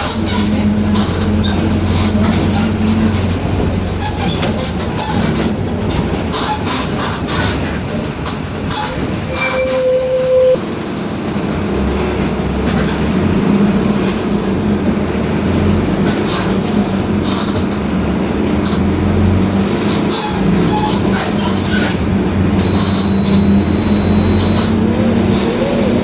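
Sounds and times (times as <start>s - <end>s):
bus drivetrain drone: 0.0s - 26.0s
steady high tone: 8.9s - 10.7s.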